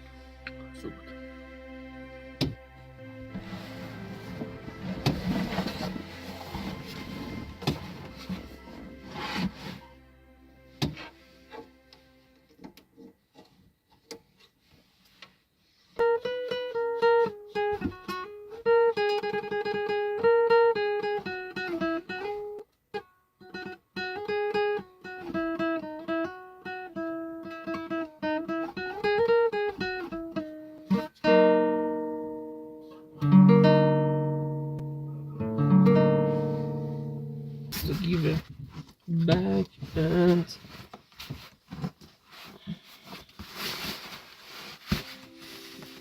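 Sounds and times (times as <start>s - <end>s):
strummed guitar chords: 0.0s - 12.7s, 25.1s - 37.9s
acoustic guitar plucked melody: 0.0s - 13.1s, 16.0s - 38.3s, 39.1s - 41.9s, 44.8s - 46.0s.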